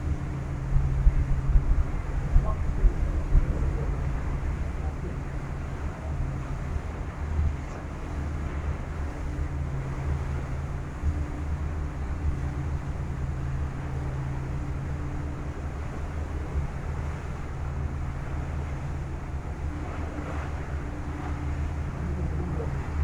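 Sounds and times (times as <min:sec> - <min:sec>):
wind buffeting microphone: 0:00.0 - 0:07.6
faint steady hum: 0:00.0 - 0:23.0
ferry engines droning: 0:00.0 - 0:23.0.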